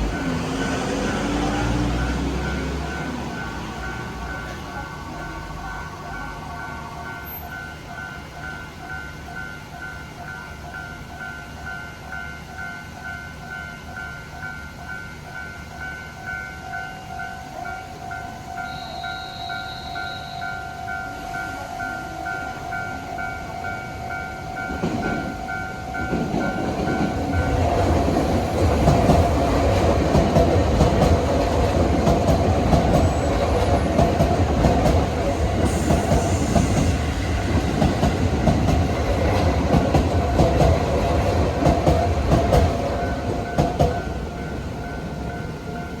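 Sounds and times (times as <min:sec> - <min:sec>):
railroad crossing bell ringing: 0:00.0 - 0:46.0
brief high tone: 0:16.9 - 0:23.9
train wheels clattering on rails: 0:24.4 - 0:46.0.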